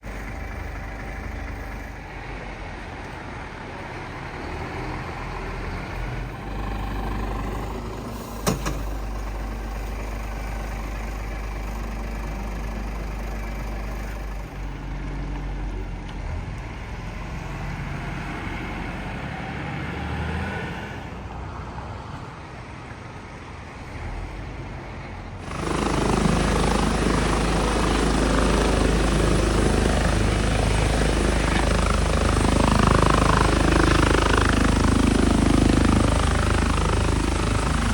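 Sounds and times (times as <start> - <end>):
helicopter noise: 0.0 - 3.0, 3.6 - 15.2, 25.4 - 37.9
vehicle rumble: 0.0 - 37.9.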